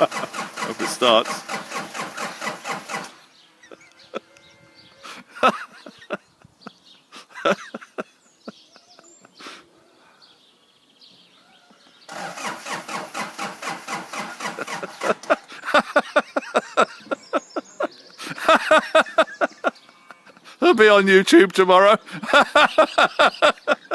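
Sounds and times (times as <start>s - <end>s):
truck starter motor cranking: 0.0s - 3.3s, 12.1s - 15.6s.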